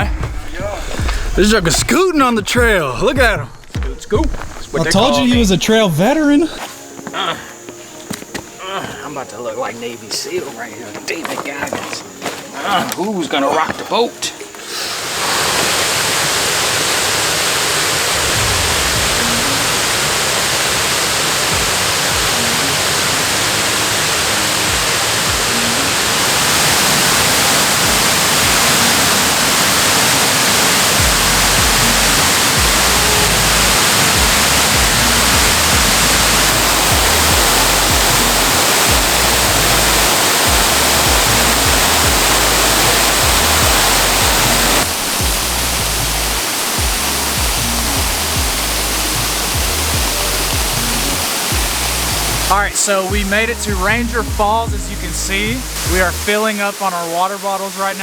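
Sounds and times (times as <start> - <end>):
background music: 0.0 - 58.0
waterfall roaring: 14.4 - 58.0
low bass line: 18.2 - 20.7, 30.8 - 56.3.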